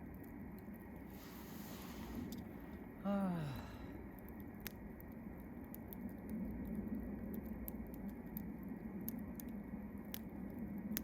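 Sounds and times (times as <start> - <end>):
campfire crackling and popping: 0.0 - 11.0.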